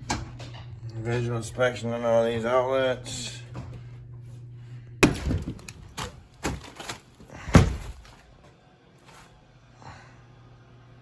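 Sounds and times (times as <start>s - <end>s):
knocks and thuds: 5.0s - 8.2s.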